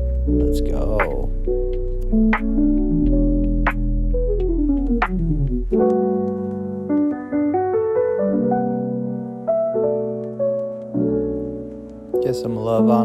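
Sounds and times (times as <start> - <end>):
piano music: 0.0 - 13.0.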